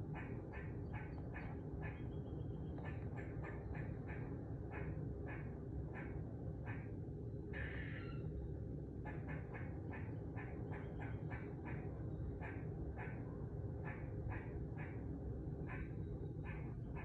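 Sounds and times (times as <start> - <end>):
squirrel calling: 7.5 - 8.3.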